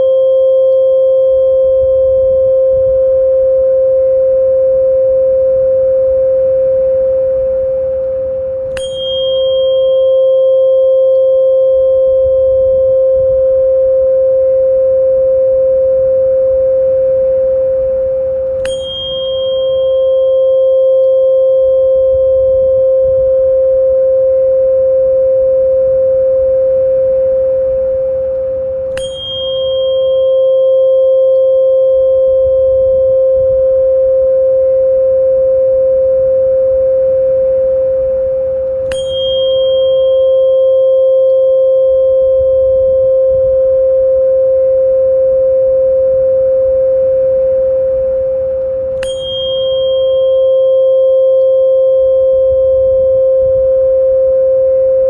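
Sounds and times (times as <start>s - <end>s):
steady pure tone: 0.0s - 55.0s
sharp click with high ring: 8.7s - 12.2s, 18.4s - 22.1s, 28.9s - 32.4s, 38.6s - 42.4s, 48.9s - 52.9s.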